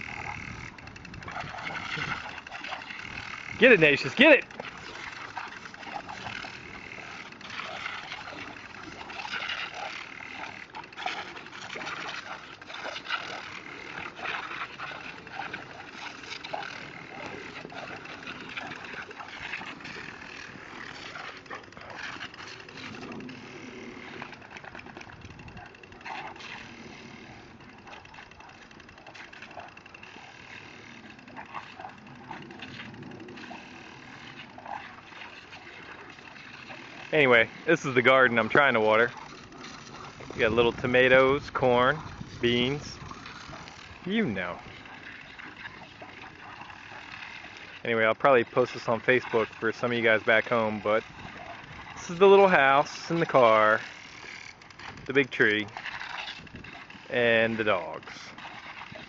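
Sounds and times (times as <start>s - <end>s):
dogs snapping and mouth noises: 0.0s - 37.6s, 43.0s - 47.8s, 51.0s - 52.0s
water splashing: 0.0s - 59.0s.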